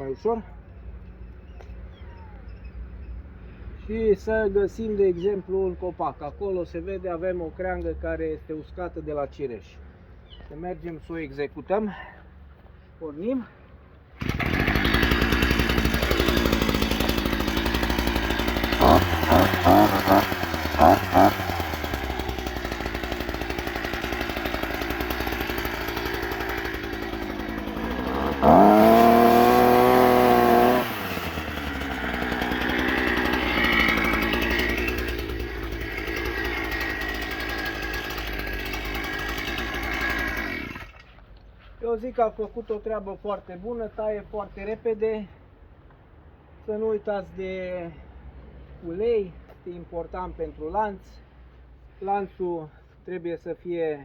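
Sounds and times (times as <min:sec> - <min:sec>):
small two-stroke engine revving: 0:14.2 - 0:41.0.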